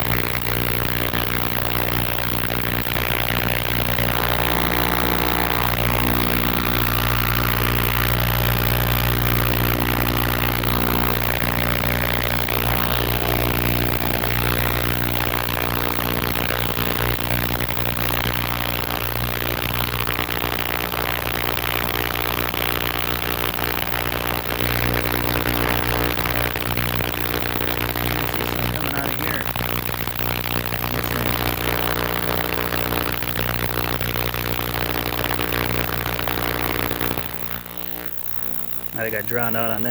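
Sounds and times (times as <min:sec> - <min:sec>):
ultrasonic cleaner humming: 0:02.9 - 0:17.5, 0:26.6 - 0:32.5.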